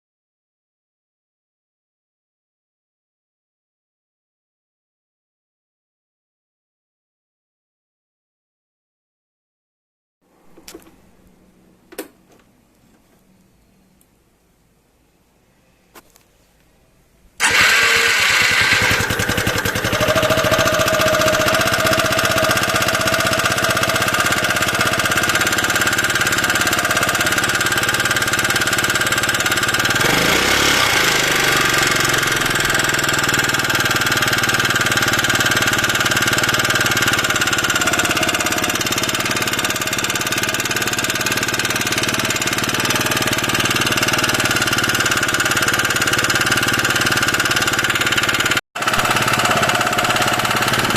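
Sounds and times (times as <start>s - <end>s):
metallic engine knocking: 17.4s - 50.9s
scooter engine running: 17.4s - 50.9s.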